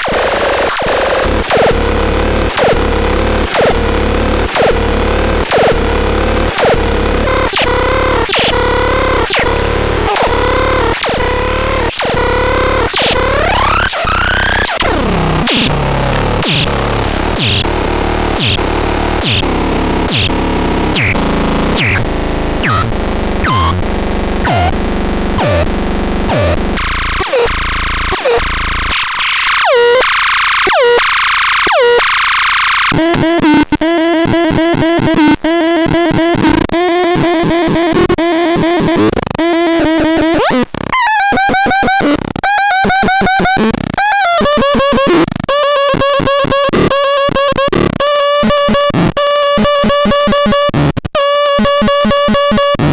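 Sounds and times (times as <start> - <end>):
synthesizer notes zapping down: 1.0 - 32.0
synth bass: 1.0 - 32.9.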